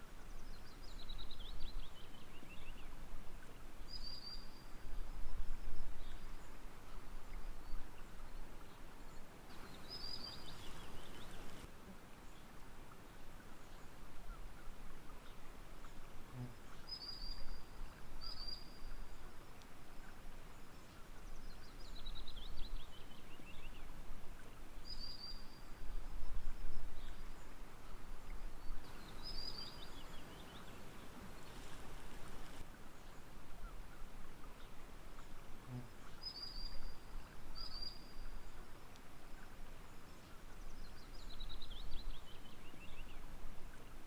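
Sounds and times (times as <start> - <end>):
calm water hissing: 0.0 - 44.0
small birds singing: 7.5 - 11.7, 28.4 - 33.2.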